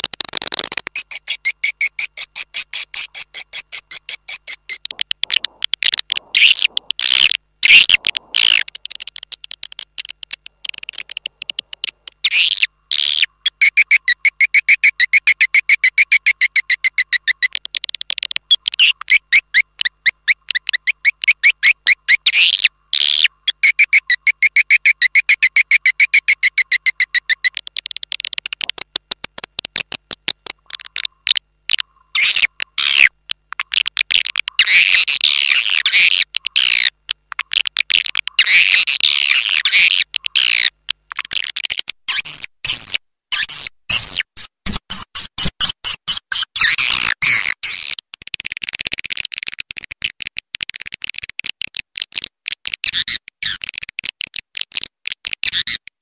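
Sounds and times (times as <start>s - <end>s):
sweeping bird calls: 1.1s - 9.1s, 10.0s - 17.6s.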